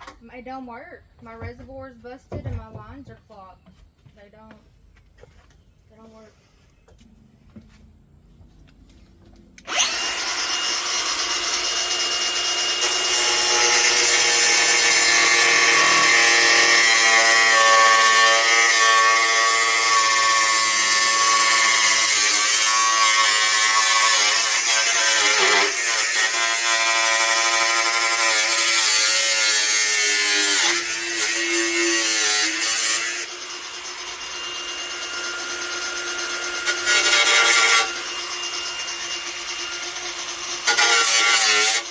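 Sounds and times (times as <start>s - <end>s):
power tool cutting metal panel: 9.6s - 41.9s.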